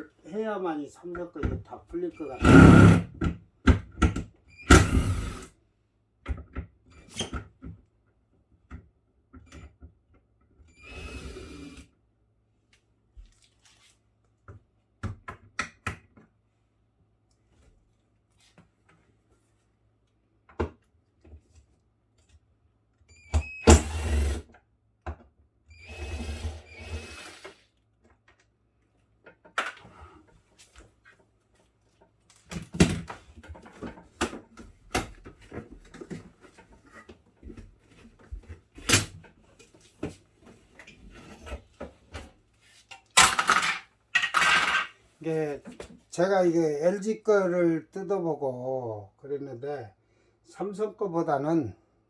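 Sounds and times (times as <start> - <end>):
cordless drill running: 2.4 - 3.1, 25.8 - 27.5.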